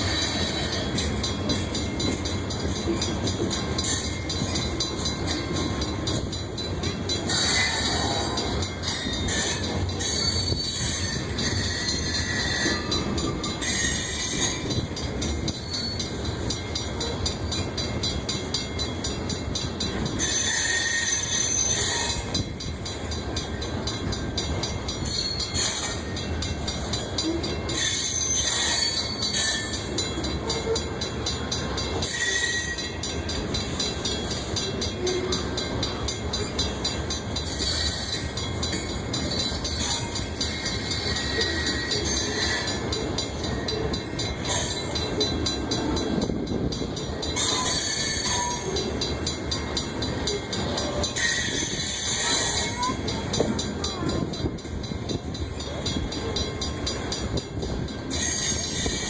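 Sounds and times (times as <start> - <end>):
train wheels rumbling on rail: 0.0 - 59.0
high-pitched wheel squeals: 7.2 - 14.6, 20.2 - 22.3, 32.0 - 33.0, 51.2 - 52.7.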